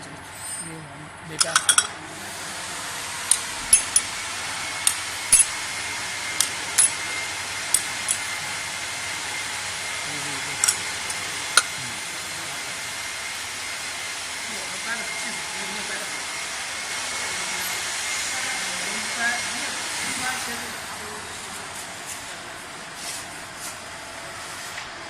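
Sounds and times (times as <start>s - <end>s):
glass pieces clinking: 1.4s - 1.9s, 3.3s - 4.0s, 6.4s - 7.0s.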